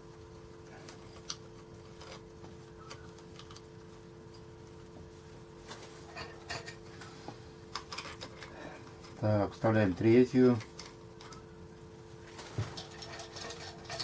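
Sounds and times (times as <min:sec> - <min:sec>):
faint steady hum: 0:00.0 - 0:14.0
small metal parts clicking: 0:07.7 - 0:09.3, 0:12.8 - 0:14.0.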